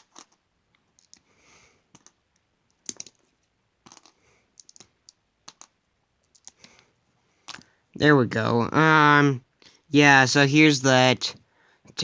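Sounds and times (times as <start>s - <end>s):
plastic pieces clicking: 0.0s - 0.4s, 1.0s - 1.2s, 1.9s - 6.8s.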